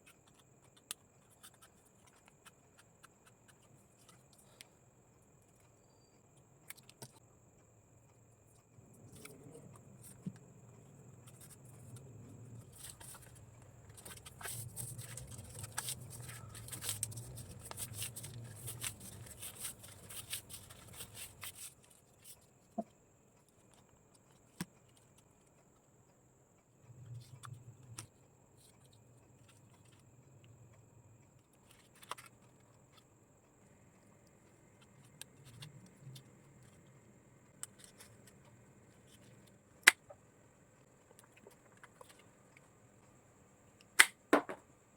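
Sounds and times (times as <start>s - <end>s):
faint low hum: 0.0s - 44.0s
paper crackling and rustling: 12.6s - 22.4s.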